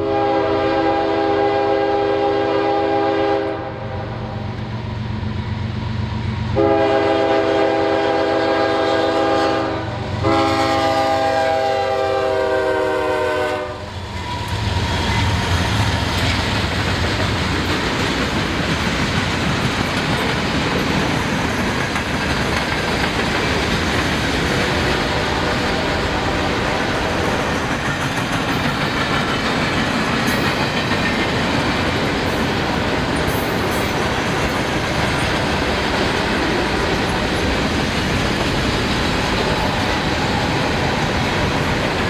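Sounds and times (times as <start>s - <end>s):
locomotive horn blasts: 0.0s - 4.0s, 6.6s - 13.9s
train engines rumbling: 0.0s - 42.0s
wheels clacking over rail joints: 14.1s - 42.0s.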